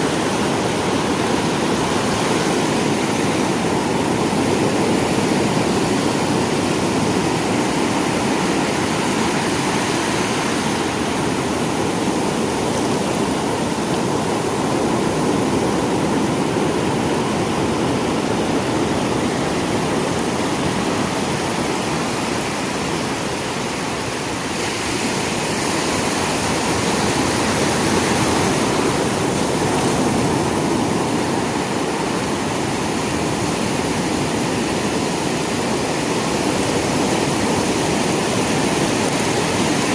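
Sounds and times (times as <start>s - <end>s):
sea waves washing ashore: 0.0s - 39.9s.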